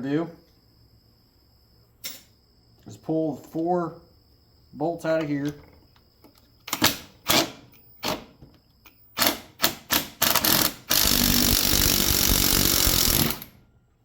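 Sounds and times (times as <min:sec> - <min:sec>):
impact wrench rattling: 0:09.2 - 0:13.6.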